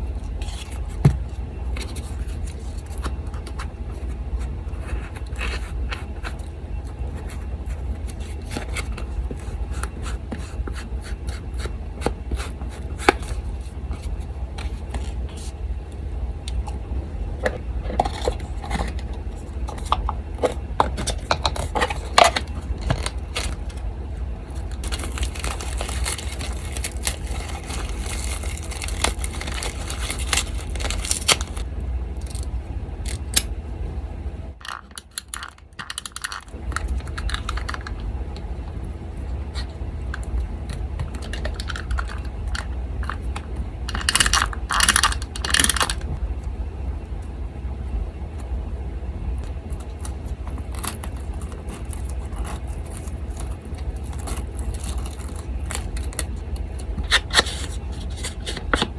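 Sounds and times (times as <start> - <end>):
electric fan humming: 0.0 - 58.9
paper rustling and crinkling: 19.7 - 23.8, 24.5 - 31.6, 49.8 - 58.9.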